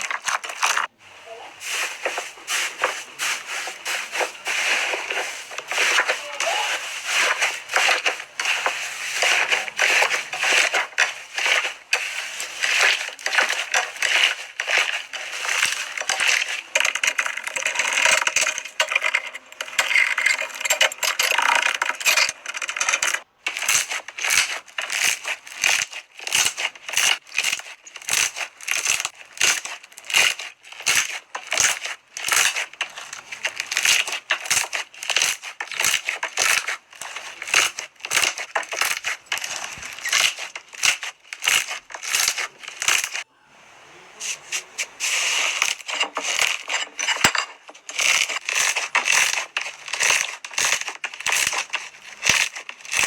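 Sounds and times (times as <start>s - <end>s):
slime crackling and popping: 5.4s - 43.3s, 47.8s - 53.0s.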